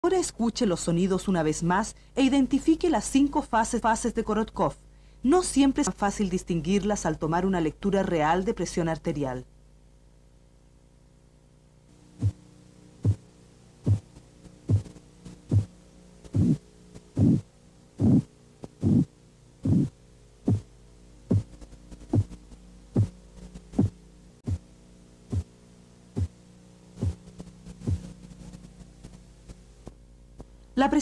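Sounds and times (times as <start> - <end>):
steady low hum: 0.0 - 31.0
heartbeat taps through stethoscope: 12.2 - 12.4, 13.0 - 13.2, 13.8 - 14.1, 14.7 - 15.7, 16.3 - 16.6, 17.2 - 17.4, 18.0 - 19.9, 20.5 - 20.7, 21.3 - 22.4, 23.0 - 23.2, 23.8 - 24.6, 27.0 - 27.2, 27.9 - 28.1.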